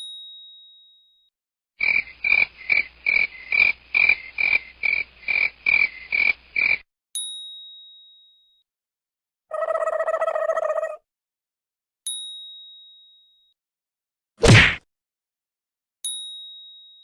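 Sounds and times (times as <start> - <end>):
rapid croaking calls: 1.8 - 6.8, 9.5 - 11.0.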